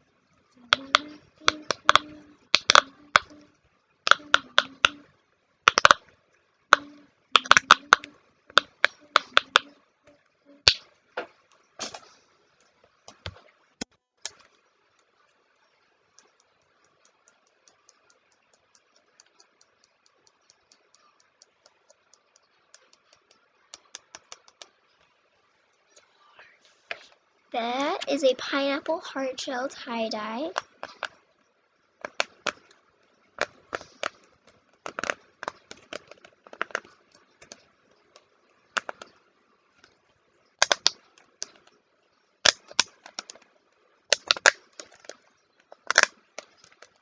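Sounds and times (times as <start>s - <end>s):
plastic fidget toy clicks: 0.7s - 3.4s, 4.0s - 5.0s, 5.6s - 6.1s, 6.7s - 9.8s, 33.4s - 37.6s, 40.6s - 41.7s, 42.4s - 43.4s, 44.1s - 47.0s
fast even ticking: 16.1s - 24.8s.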